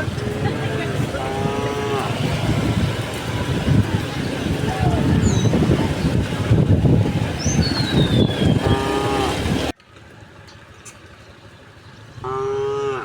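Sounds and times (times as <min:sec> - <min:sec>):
cow mooing: 0:00.0 - 0:02.6, 0:08.3 - 0:09.7, 0:12.2 - 0:13.0
loud rumbling noise: 0:00.0 - 0:09.7
high bird chirp: 0:05.2 - 0:06.3, 0:07.3 - 0:09.3.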